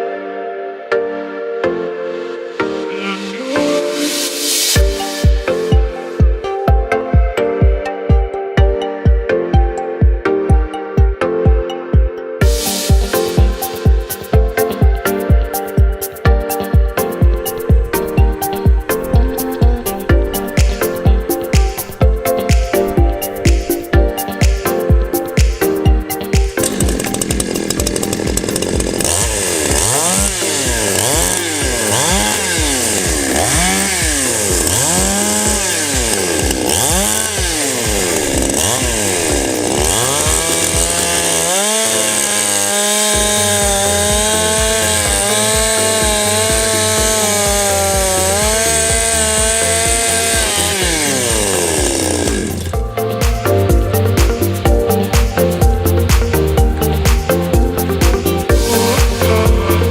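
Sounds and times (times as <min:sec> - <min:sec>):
background music with steady beat: 0:00.0 - 0:59.9
chainsaw engine revving: 0:12.4 - 0:15.2, 0:17.0 - 0:24.8, 0:26.3 - 0:53.3, 0:56.8 - 0:59.9.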